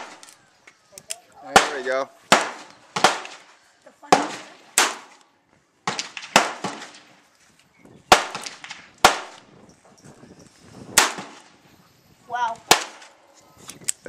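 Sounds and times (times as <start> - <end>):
revolver gunshots: 1.5 - 3.5, 4.1 - 5.2, 5.9 - 7.1, 8.1 - 9.5, 11.0 - 11.5, 12.7 - 13.2.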